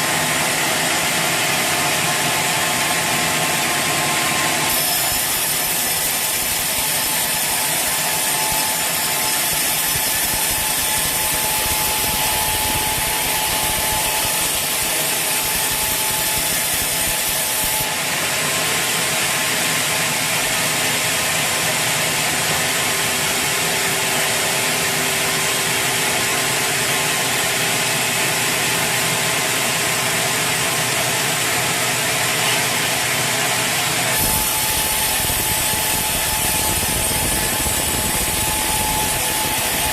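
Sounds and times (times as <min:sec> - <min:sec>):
saw cutting through log: 0:00.0 - 0:39.9.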